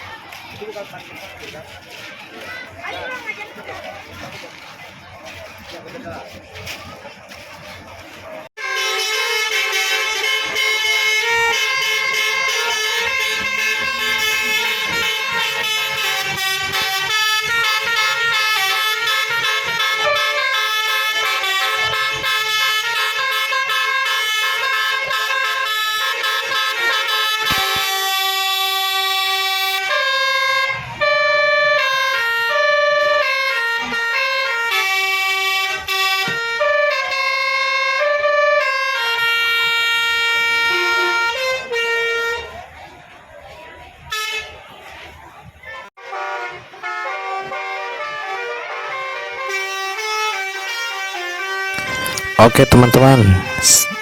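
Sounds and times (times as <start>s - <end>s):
bus horn playing melodic tunes: 8.6s - 42.5s, 46.0s - 52.8s.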